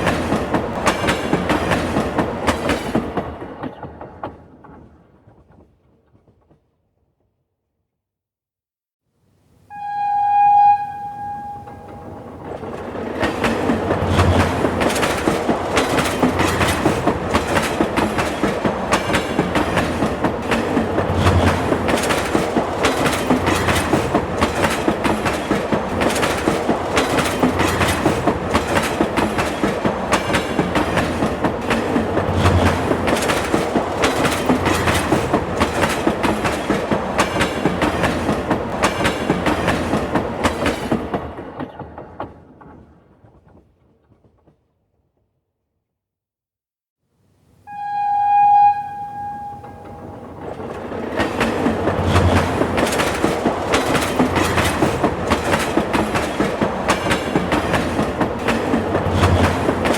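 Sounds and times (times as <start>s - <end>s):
train wheels clattering over rail joints: 0.0s - 6.6s, 12.4s - 44.6s, 49.7s - 59.9s
train horn: 9.7s - 12.4s, 47.7s - 50.4s.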